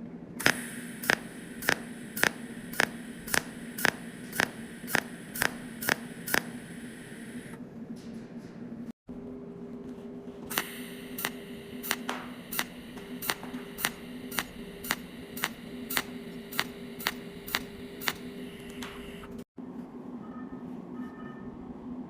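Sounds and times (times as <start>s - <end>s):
steady electrical hum: 0.0s - 20.1s
welding machine clicks: 0.4s - 7.6s, 10.5s - 19.4s.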